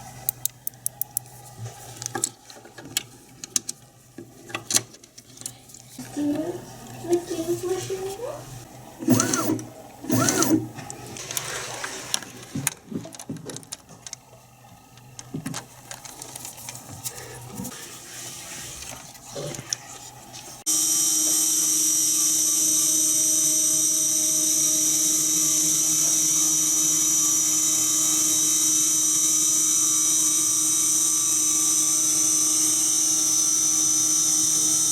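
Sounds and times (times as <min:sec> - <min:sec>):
router spindle motor whine: 0:09.0 - 0:10.7, 0:20.7 - 0:34.9.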